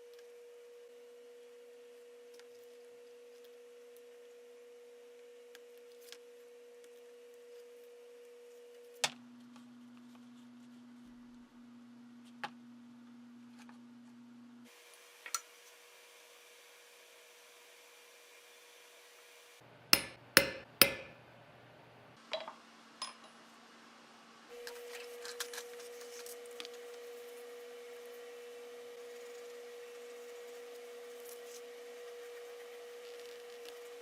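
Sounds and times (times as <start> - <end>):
electrical hum: 24.5 - 34.0.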